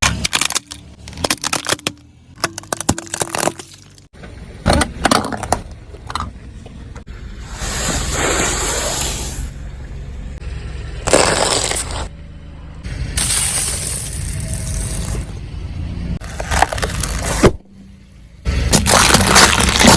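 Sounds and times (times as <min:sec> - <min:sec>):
things cracking under tyre: 0:00.0 - 0:04.1, 0:11.0 - 0:12.1, 0:16.2 - 0:17.6, 0:18.7 - 0:19.9
loud hiss: 0:13.2 - 0:15.3.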